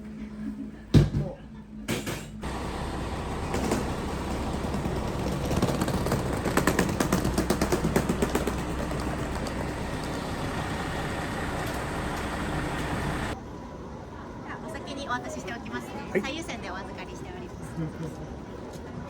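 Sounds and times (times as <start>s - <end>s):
background hum: 2.4s - 13.4s
rattling clicks: 2.4s - 13.4s.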